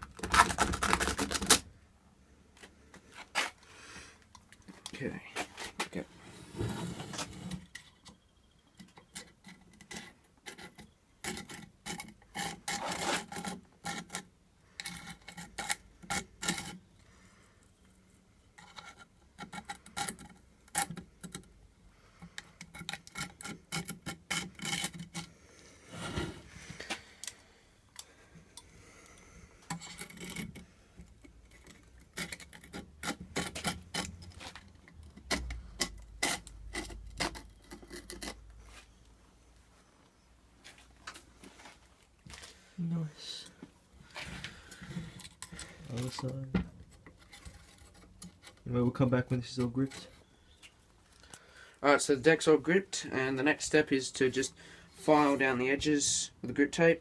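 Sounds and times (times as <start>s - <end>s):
metal key scraping grip tape: 29.7s - 38.4s.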